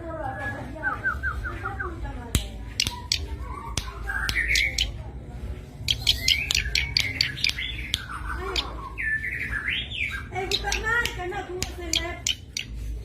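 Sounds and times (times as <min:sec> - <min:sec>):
bird clicking notes: 0:02.3 - 0:05.0, 0:05.8 - 0:08.7, 0:10.5 - 0:12.8
bird scratchy chattering: 0:02.4 - 0:05.1, 0:05.7 - 0:13.0.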